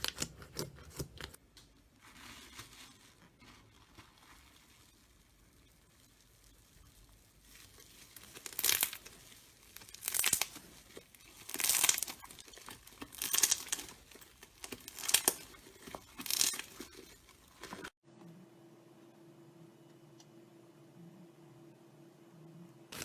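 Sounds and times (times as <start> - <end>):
slime squishing by hand: 0.0 - 18.0.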